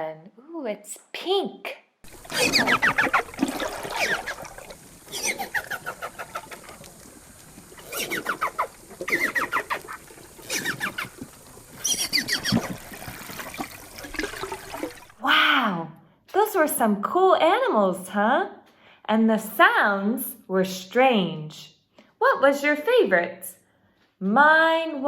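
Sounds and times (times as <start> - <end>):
dolphin clicks and chirps: 2.3 - 3.3, 3.9 - 12.8.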